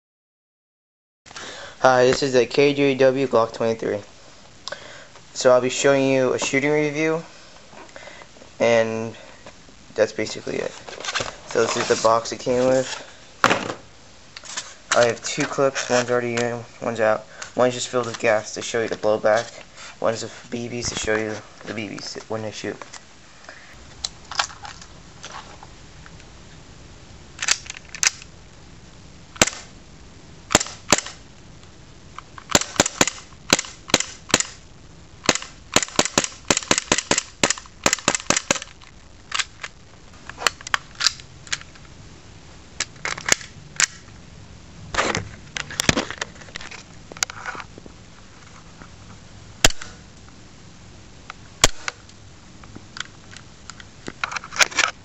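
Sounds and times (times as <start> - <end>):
airsoft pistol shots: 29.4 - 29.7, 30.5 - 31.2, 32.5 - 34.6, 35.2 - 38.6, 49.6 - 49.9, 51.6 - 52.0.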